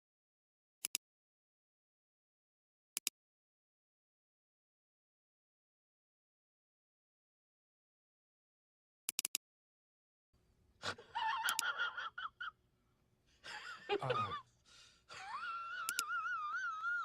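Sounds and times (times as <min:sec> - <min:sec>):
high-pitched voice-like cries: 0:15.2 - 0:17.0.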